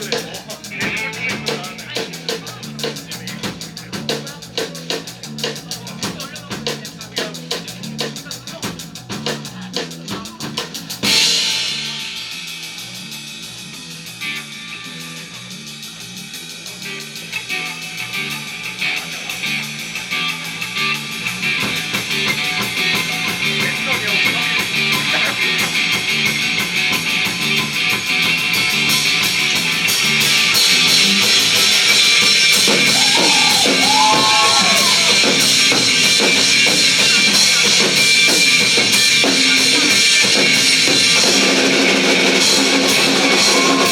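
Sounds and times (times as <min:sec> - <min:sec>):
bass line: 0:00.0 - 0:43.9
drums: 0:00.0 - 0:43.9
gliding lead guitar: 0:17.4 - 0:43.9.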